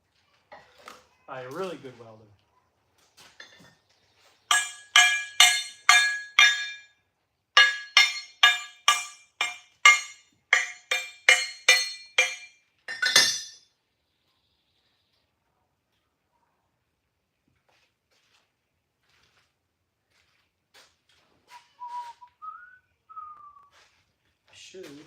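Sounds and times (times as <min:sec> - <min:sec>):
hammer striking ringing steel: 0:04.5 - 0:06.9, 0:07.6 - 0:13.6
metallic clatter: 0:04.5 - 0:06.9, 0:07.6 - 0:13.6.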